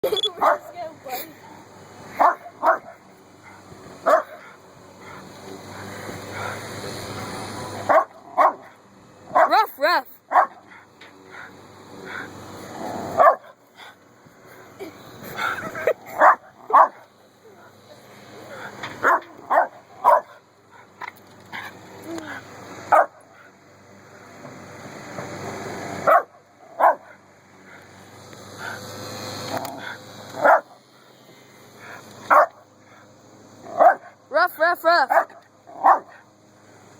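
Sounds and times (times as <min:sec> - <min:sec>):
lawn mower engine: 0:00.0 - 0:36.9
dog barking: 0:00.4 - 0:00.7, 0:02.2 - 0:03.0, 0:04.0 - 0:04.5, 0:07.9 - 0:09.6, 0:10.3 - 0:10.6, 0:13.2 - 0:13.5, 0:16.2 - 0:17.0, 0:19.0 - 0:20.4, 0:22.9 - 0:23.2, 0:26.1 - 0:27.2, 0:30.4 - 0:30.7, 0:32.3 - 0:32.6, 0:33.7 - 0:34.1, 0:35.1 - 0:36.2.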